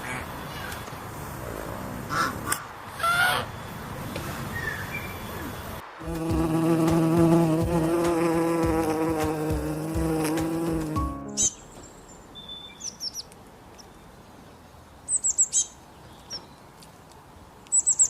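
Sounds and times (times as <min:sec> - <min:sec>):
flying insect buzzing: 0:06.0 - 0:11.3.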